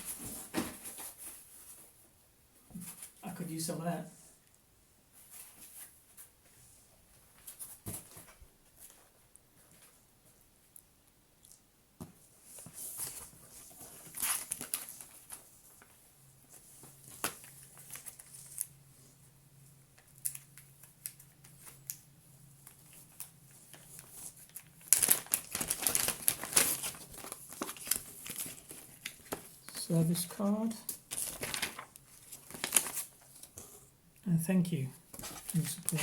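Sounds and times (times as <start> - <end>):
packaging rustling and crinkling: 12.5 - 18.8, 22.6 - 33.6, 35.1 - 36.0.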